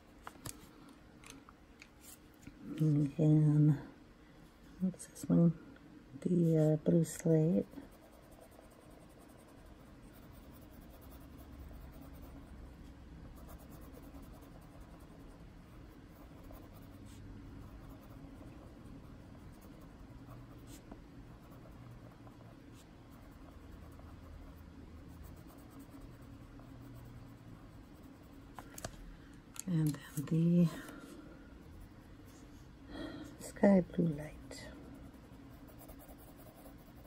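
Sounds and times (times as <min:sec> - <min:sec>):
pencil scratching on paper: 0:07.5 - 0:28.4, 0:34.3 - 0:37.0.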